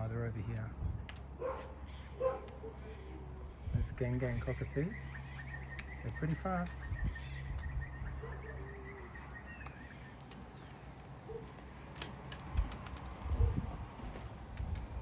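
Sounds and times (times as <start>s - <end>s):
birds chirping: 0.0s - 15.0s
sharp clicks: 5.4s - 8.2s, 8.9s - 13.4s.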